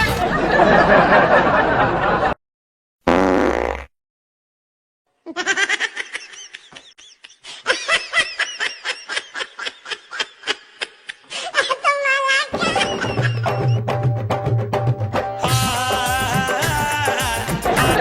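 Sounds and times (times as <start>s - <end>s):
high-pitched laughter: 5.2s - 13.8s.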